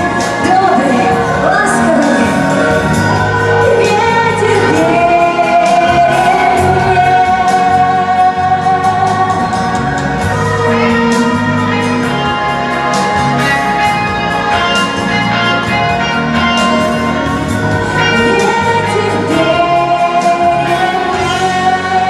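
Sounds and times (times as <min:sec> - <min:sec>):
choir singing: 0:00.0 - 0:22.0
instrumental backing with beat: 0:00.0 - 0:22.0.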